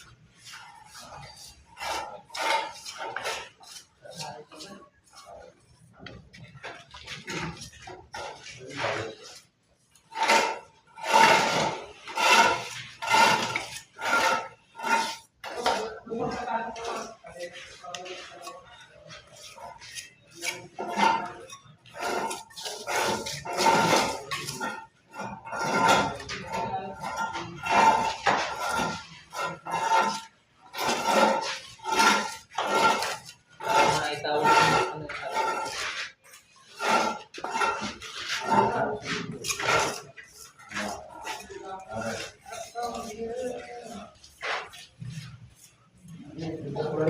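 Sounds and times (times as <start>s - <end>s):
trowel scraping wet plaster: 0.0s - 47.0s.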